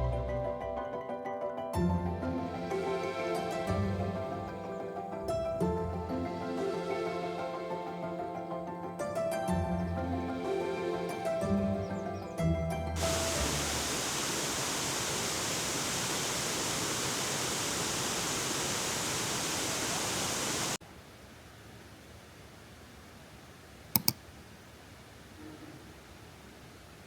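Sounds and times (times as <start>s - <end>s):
steady rushing noise: 13.0s - 20.8s
quiet hiss: 13.0s - 27.0s
quick clicks: 24.0s - 24.2s.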